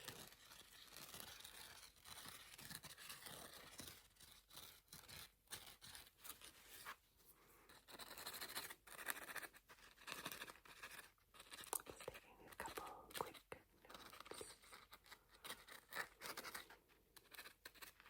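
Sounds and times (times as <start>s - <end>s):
brush scrubbing a sponge: 0.0s - 7.0s.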